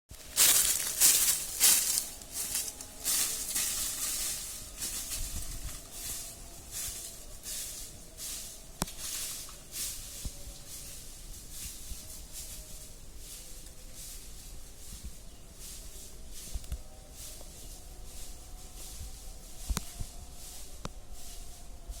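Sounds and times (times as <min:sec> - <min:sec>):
rustling bursts: 0:00.1 - 0:10.2.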